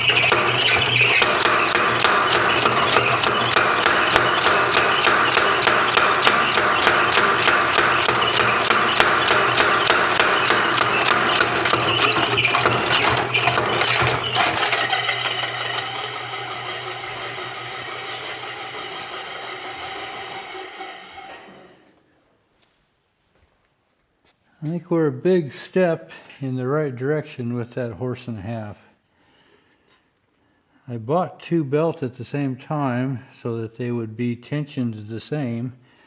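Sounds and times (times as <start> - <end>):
belt squeak: 0.0 - 16.4
power hammer striking: 0.0 - 21.7
electric motor hum: 0.0 - 21.8
machine winding down whine: 0.0 - 21.8.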